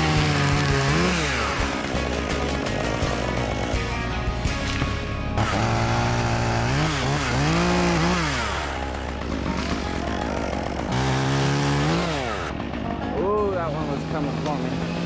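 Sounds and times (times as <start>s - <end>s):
chainsaw engine revving: 0.0s - 15.0s.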